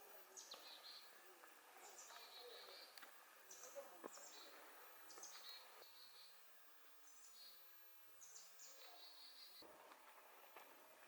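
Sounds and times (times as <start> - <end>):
faint high bird calls: 0.1 - 1.2, 1.8 - 6.4, 7.0 - 9.7.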